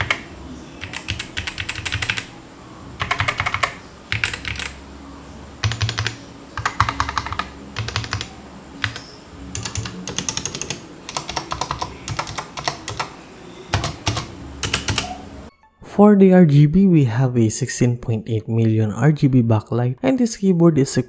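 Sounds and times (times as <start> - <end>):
mechanical keyboard clacks: 0.0 - 0.2, 0.8 - 2.3, 3.0 - 4.8, 5.6 - 9.0, 9.6 - 13.1, 13.7 - 15.1.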